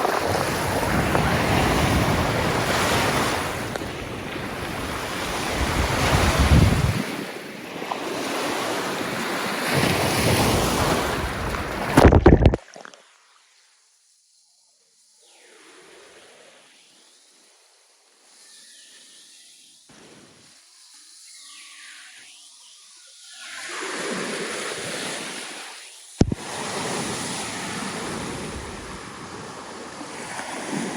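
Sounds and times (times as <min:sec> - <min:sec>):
wind buffeting microphone: 0:00.0 - 0:07.3
surf rushing onto beach: 0:00.0 - 0:12.6, 0:23.8 - 0:30.9
waves washing on shore: 0:00.0 - 0:12.9, 0:23.4 - 0:30.9.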